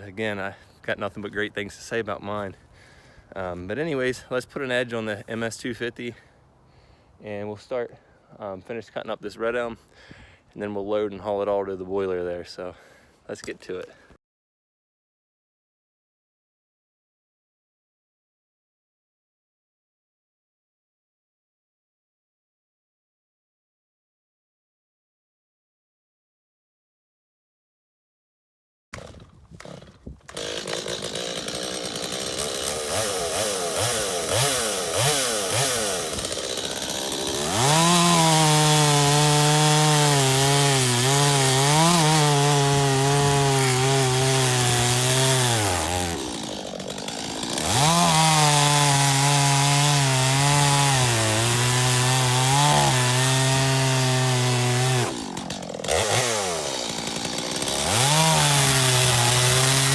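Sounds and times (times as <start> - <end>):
chainsaw cutting wood: 28.9 - 59.9.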